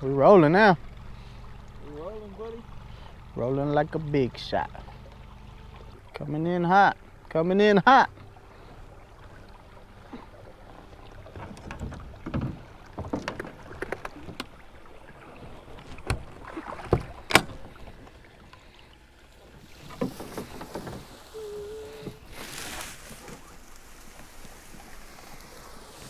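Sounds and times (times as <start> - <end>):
water splashing: 0.0 - 26.0
knocks against boat hull: 11.4 - 14.5.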